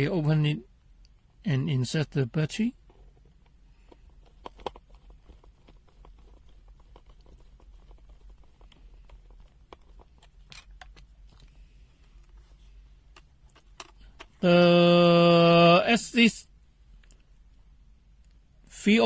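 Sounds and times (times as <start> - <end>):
low steady hum: 0.0 - 19.0
plastic multimeter clicks and rustles: 3.3 - 12.4, 13.1 - 14.4.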